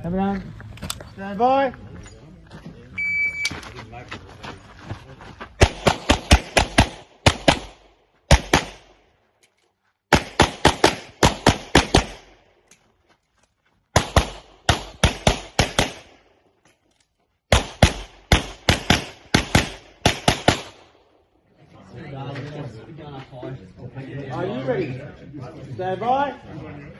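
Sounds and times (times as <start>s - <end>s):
rapid pistol shots: 5.6s - 9.0s, 10.1s - 12.4s, 14.0s - 16.2s, 17.5s - 20.9s.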